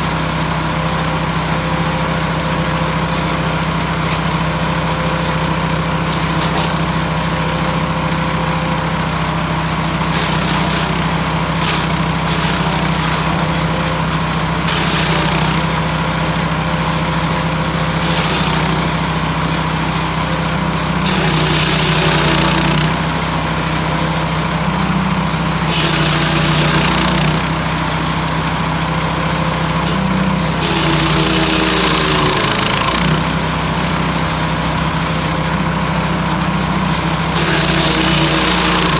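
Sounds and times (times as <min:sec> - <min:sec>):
wood chipper engine running: 0:00.0 - 0:38.9
material rushing through chipper: 0:03.4 - 0:24.4.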